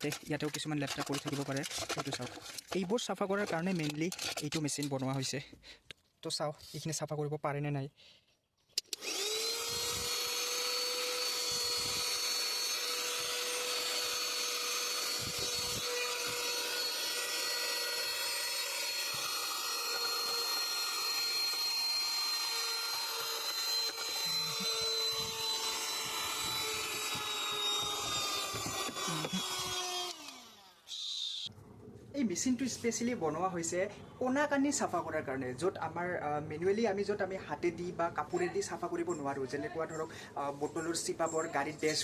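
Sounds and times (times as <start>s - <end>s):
handheld vacuum cleaner whining: 0.1s - 2.8s, 8.8s - 31.5s.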